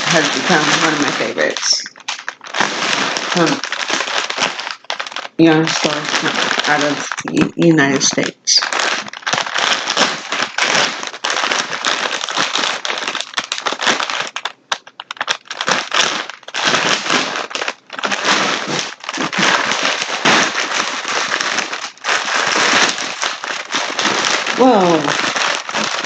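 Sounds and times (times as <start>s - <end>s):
packaging crinkling: 0.0s - 26.0s.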